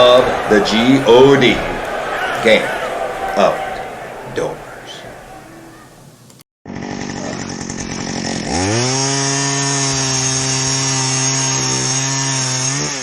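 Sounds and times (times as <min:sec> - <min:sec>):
ice auger two-stroke engine revving: 0:06.7 - 0:13.0.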